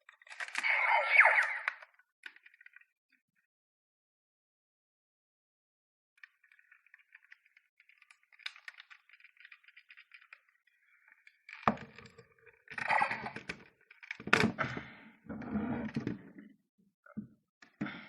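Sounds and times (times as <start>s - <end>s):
plastic toy rattling and clicking: 6.2s - 14.5s.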